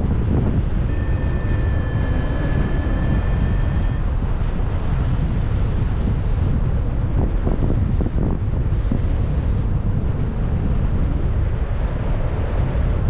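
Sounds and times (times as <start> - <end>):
wind buffeting microphone: 0.0 - 13.0
high electronic tone: 0.9 - 4.1.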